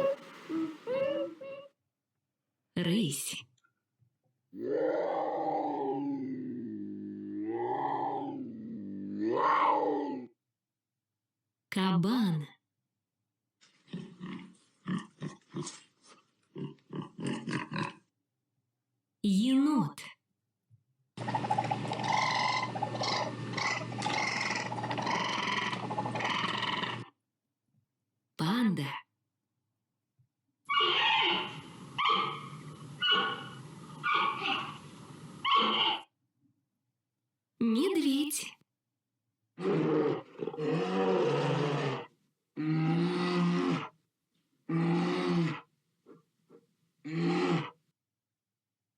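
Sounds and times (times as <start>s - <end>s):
bear growling and roaring: 4.6s - 10.4s, 13.8s - 18.1s, 21.2s - 27.2s, 30.7s - 36.1s, 39.6s - 44.0s, 44.7s - 47.8s
raccoon chittering: 21.2s - 27.1s, 30.7s - 34.8s
bear grunts: 39.6s - 43.9s, 47.1s - 47.8s.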